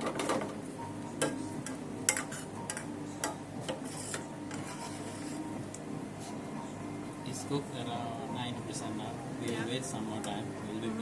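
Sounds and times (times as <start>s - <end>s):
spoon scraping a cooking pot: 3.6s - 5.6s.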